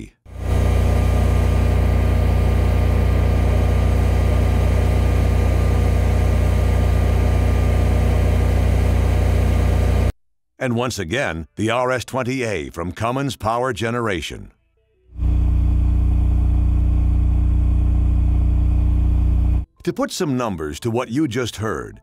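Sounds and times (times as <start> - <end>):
generator engine drone: 0.3 - 10.1, 15.2 - 19.7.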